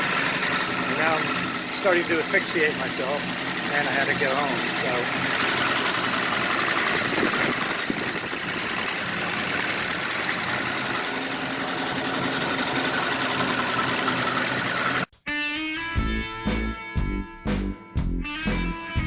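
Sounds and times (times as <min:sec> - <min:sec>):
car engine idling roughly: 0:00.0 - 0:15.1.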